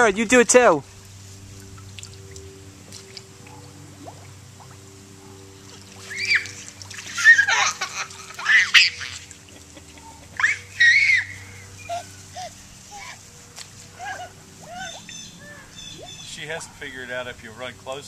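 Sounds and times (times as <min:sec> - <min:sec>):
steady low hum: 0:00.0 - 0:18.0
children squealing and shrieking: 0:06.0 - 0:09.3, 0:10.3 - 0:13.2, 0:13.9 - 0:15.8.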